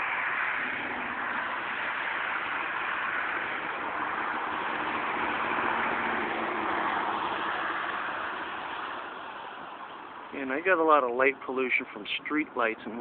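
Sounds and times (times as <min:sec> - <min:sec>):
distant highway traffic hiss: 0:00.0 - 0:13.0.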